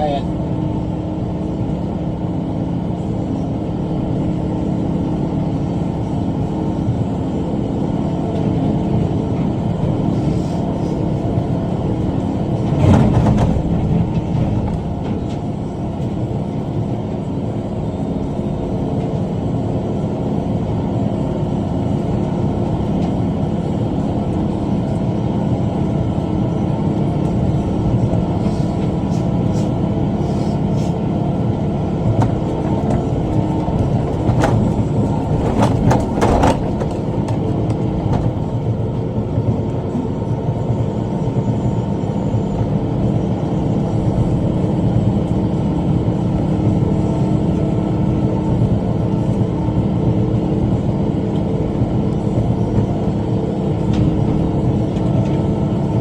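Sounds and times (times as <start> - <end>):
tractor engine under load: 9.9 - 16.5, 21.6 - 38.9.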